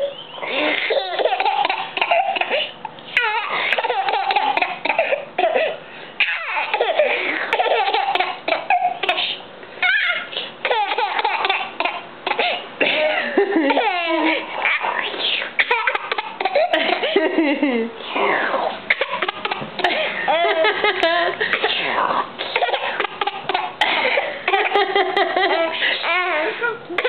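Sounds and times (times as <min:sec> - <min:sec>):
people laughing: 0:12.9 - 0:14.5, 0:16.7 - 0:18.0, 0:19.8 - 0:21.6.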